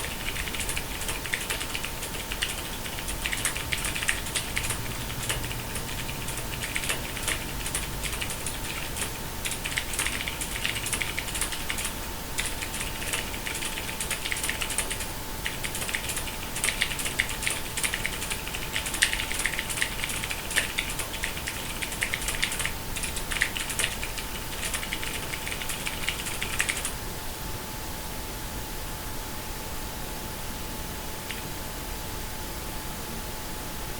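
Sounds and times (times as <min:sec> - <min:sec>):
mechanical keyboard typing: 0:00.0 - 0:27.0, 0:31.3 - 0:31.5.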